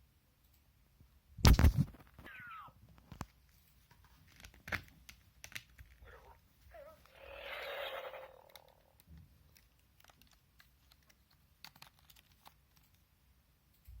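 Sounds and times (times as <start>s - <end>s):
toy hissing burst: 6.7s - 8.9s.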